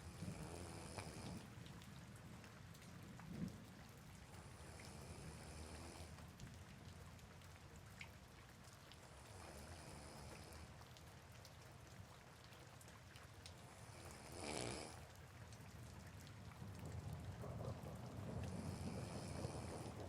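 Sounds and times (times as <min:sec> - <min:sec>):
person snoring quietly: 0:00.0 - 0:01.5, 0:04.4 - 0:06.2, 0:09.3 - 0:10.7, 0:13.7 - 0:15.0, 0:18.4 - 0:20.0
soft rain falling: 0:00.0 - 0:20.0.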